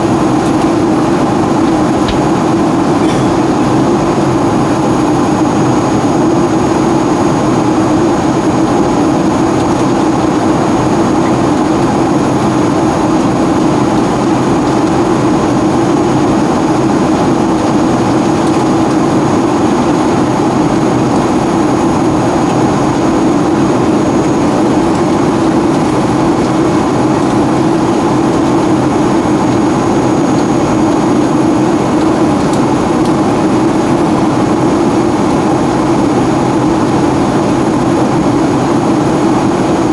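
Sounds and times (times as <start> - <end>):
jet engine and airflow rush: 0.0 - 39.9
faint high steady tones: 1.8 - 5.4.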